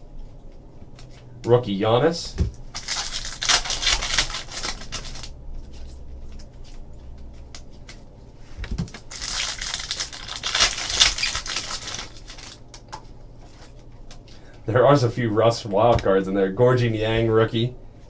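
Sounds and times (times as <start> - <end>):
trading cards crinkling and rustling: 2.2 - 14.6.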